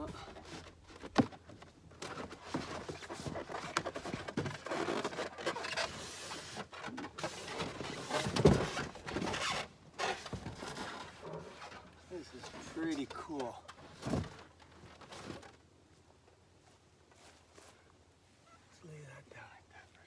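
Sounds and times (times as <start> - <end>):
cardboard box scraped and rustled: 2.0 - 13.0.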